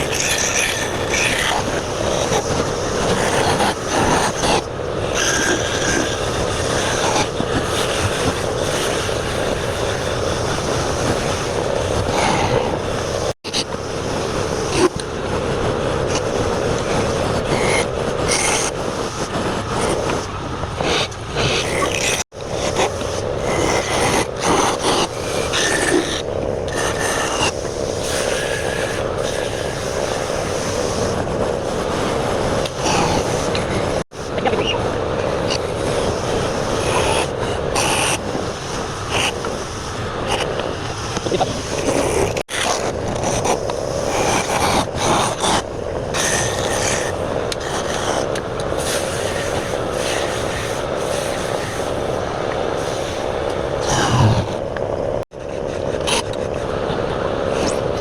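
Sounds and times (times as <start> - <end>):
wood lathe scraping: 15.9 - 34.0, 35.5 - 54.8.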